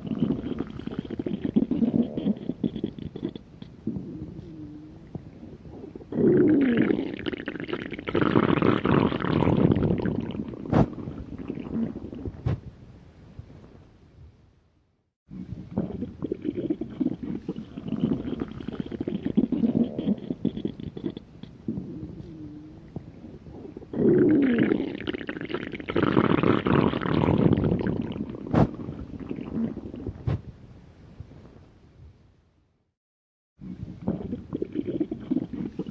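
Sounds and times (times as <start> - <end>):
stomach growling and gurgling: 0.0 - 12.7, 15.3 - 30.5, 33.6 - 35.9
sharp pops: 28.5 - 28.8.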